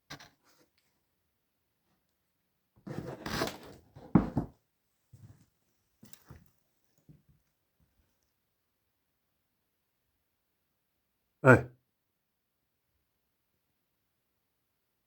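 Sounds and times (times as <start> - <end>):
rustling and scraping: 2.9 - 4.5.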